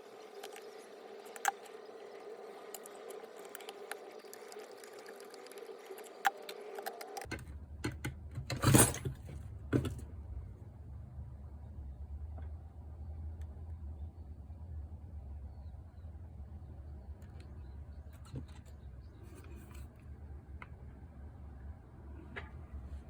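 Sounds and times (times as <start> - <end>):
steady hum: 0.0 - 7.8.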